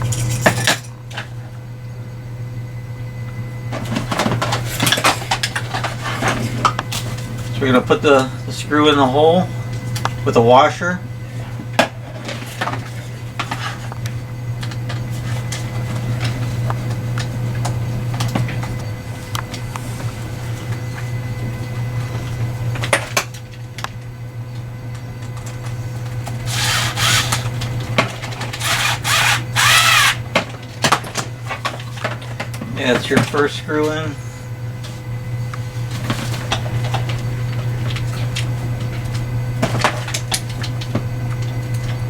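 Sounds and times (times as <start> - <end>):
screw grinding into plastic: 26.4 - 27.5, 28.5 - 30.2
screwdriver clicking and scraping: 26.5 - 27.5, 28.6 - 30.2.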